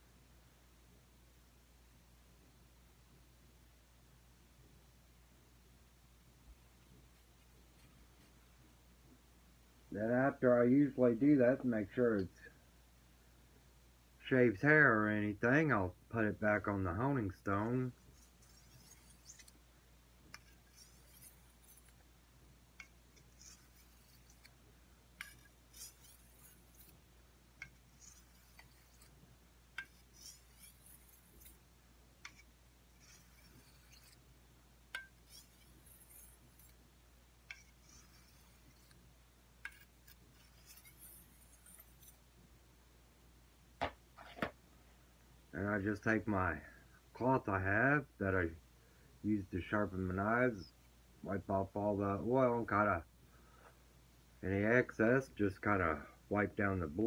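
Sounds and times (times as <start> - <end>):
blade scraping on honing stone: 17.4 - 19.6, 20.2 - 22.0, 22.8 - 24.6, 25.2 - 27.0, 27.6 - 31.6, 32.2 - 34.3, 34.9 - 36.8, 37.4 - 42.2.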